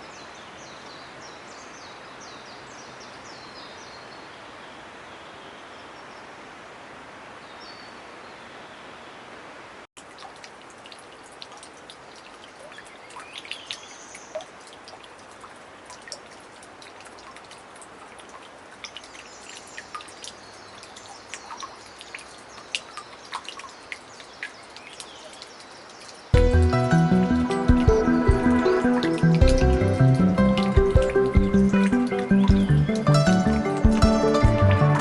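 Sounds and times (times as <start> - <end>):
outdoor background noise: 0.0 - 35.0
water dripping from leaves: 9.9 - 35.0
music: 26.4 - 35.0.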